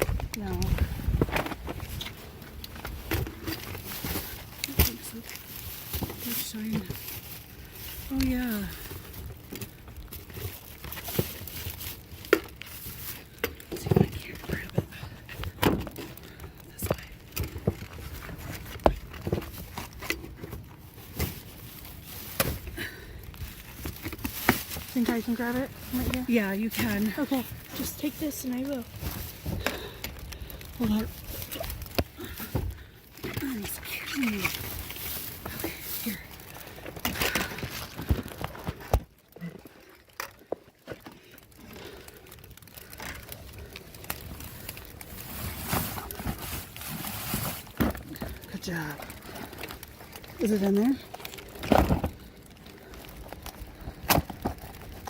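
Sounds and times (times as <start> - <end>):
trash rustling: 0.0 - 55.0.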